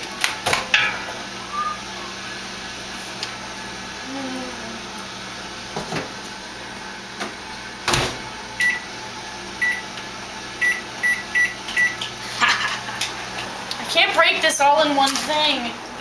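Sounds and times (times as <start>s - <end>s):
microwave door shutting: 7.2s - 8.8s
keypad beeps: 10.6s - 12.0s.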